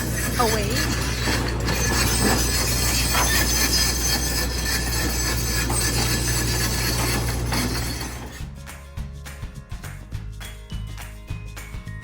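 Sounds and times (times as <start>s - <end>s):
diesel engine drone: 0.0s - 8.4s
metallic squealing and scraping: 0.0s - 8.4s.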